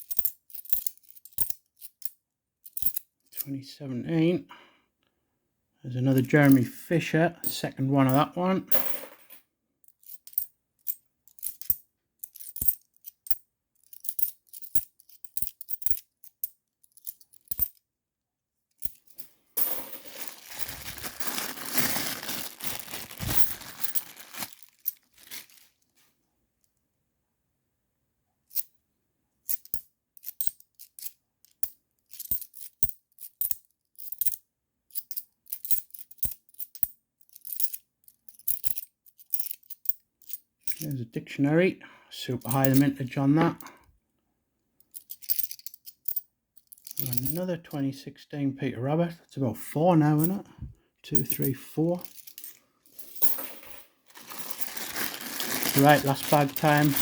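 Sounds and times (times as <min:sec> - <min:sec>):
coins rustling and jingling: 0:00.0 - 0:03.1, 0:07.4 - 0:17.8, 0:18.8 - 0:25.7, 0:29.5 - 0:40.9, 0:42.4 - 0:43.7, 0:44.9 - 0:47.4, 0:51.1 - 0:57.0
coins clinking: 0:07.4 - 0:09.4, 0:18.8 - 0:25.5, 0:42.5 - 0:43.6, 0:45.0 - 0:47.4, 0:51.2 - 0:57.0.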